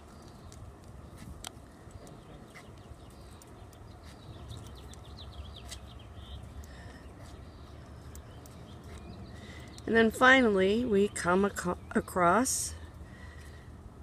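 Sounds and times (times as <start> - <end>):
small bird chirps: 1.9 - 10.0.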